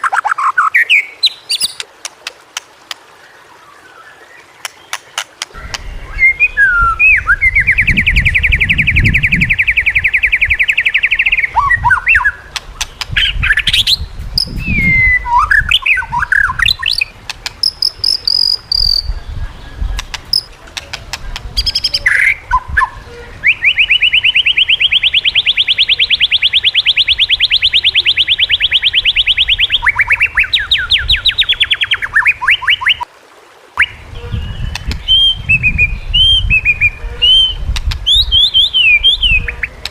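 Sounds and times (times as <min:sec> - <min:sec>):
songbird trills and whistles: 0:05.6 - 0:12.4, 0:13.2 - 0:20.5, 0:33.8 - 0:39.9.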